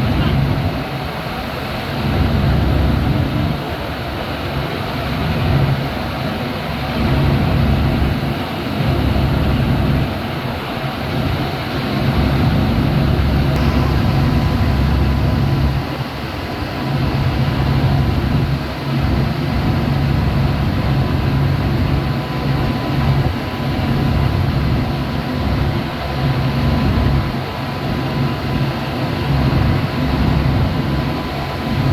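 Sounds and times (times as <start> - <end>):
boat engine droning: 6.7 - 31.9.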